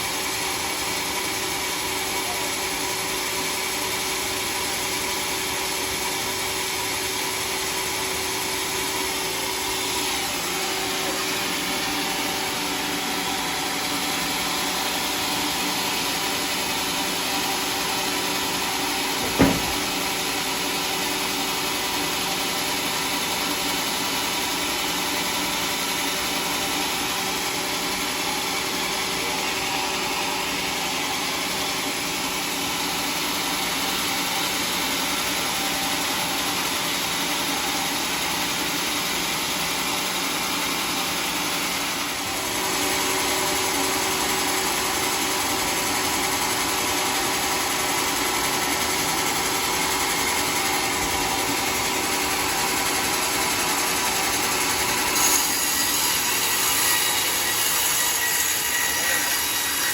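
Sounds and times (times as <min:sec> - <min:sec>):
circular saw blade running: 0:02.7 - 0:59.9
sharp knock: 0:19.2 - 0:20.0.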